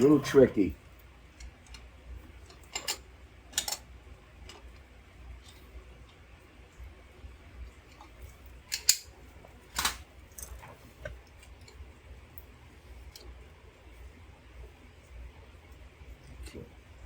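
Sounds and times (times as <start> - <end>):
pliers clicking and scraping on nut: 2.5 - 3.8, 8.7 - 9.1.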